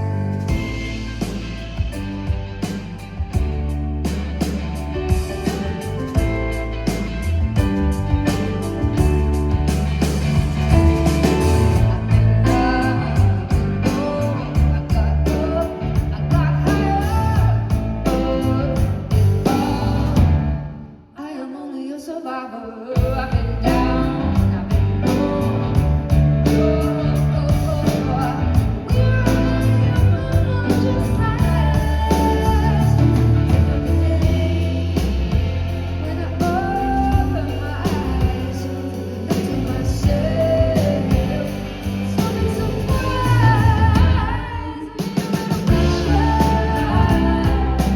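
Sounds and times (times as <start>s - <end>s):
live band playing: 0.0s - 20.9s, 23.0s - 47.9s
woman singing: 10.7s - 20.4s, 21.2s - 47.9s.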